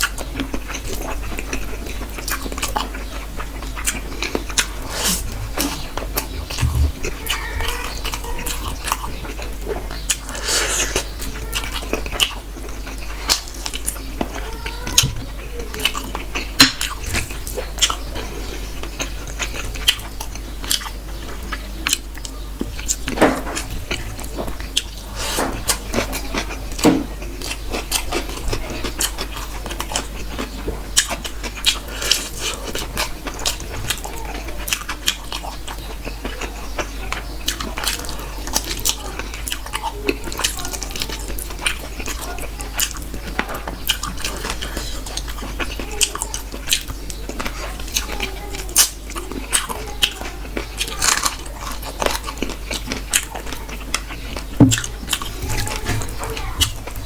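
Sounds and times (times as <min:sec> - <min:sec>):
person biting and chewing food: 0:02.2 - 0:09.1, 0:54.6 - 0:55.3.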